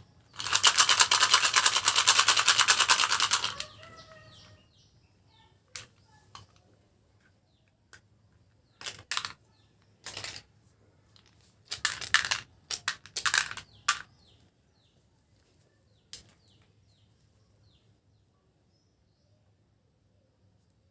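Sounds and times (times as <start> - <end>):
candies clattering into plastic containers: 8.5 - 14.2.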